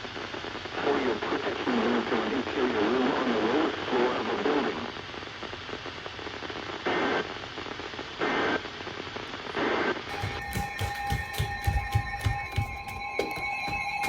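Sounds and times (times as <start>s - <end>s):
radio static hiss: 0.0s - 10.1s.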